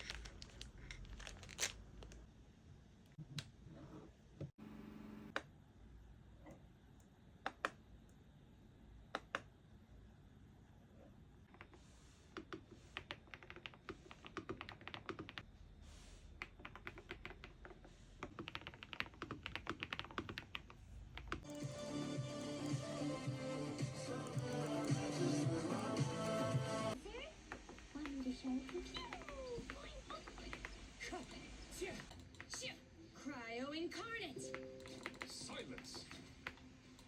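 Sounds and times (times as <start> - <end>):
mechanical keyboard typing: 12.4 - 15.4, 16.4 - 21.5, 27.5 - 30.9, 34.4 - 36.6.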